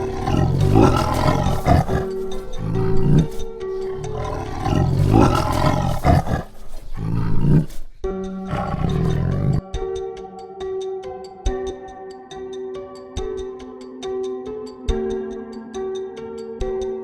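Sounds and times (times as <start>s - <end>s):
big cat roaring: 0.0s - 9.6s
background music: 0.0s - 17.0s.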